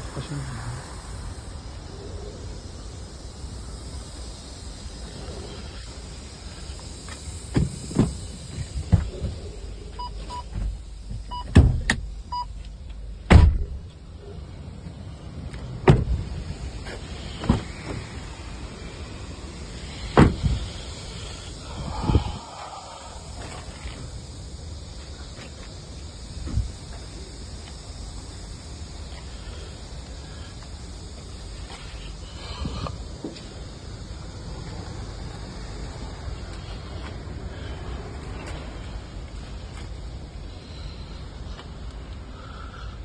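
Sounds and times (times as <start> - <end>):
truck doors and panels thumping shut: 10.5 - 12.1, 13.2 - 13.8, 15.8 - 16.3, 20.1 - 20.7.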